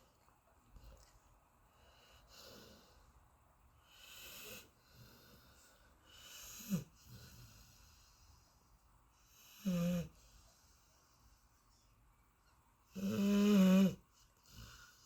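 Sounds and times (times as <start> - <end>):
dog snoring softly: 3.8 - 8.5, 9.2 - 10.8, 12.9 - 15.0.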